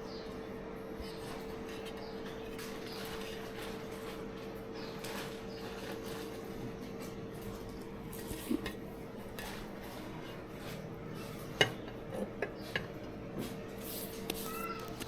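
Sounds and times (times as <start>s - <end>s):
dishes clinking: 8.1s - 13.1s.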